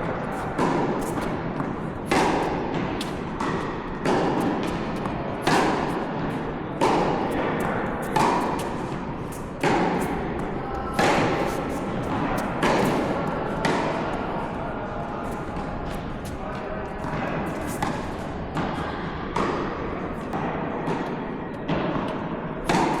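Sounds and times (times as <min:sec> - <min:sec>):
tennis racket striking ball: 0:00.0 - 0:23.0.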